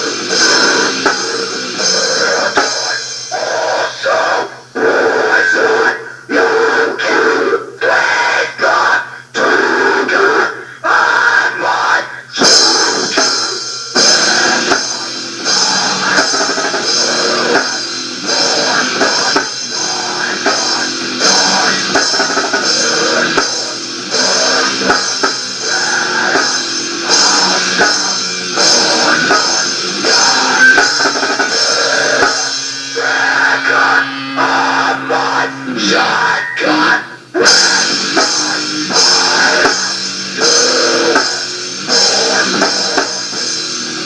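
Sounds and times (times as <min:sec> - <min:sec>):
drum kit hits: 0:00.0 - 0:03.4, 0:12.4 - 0:35.0, 0:37.3 - 0:44.0
electric guitar: 0:00.0 - 0:44.0.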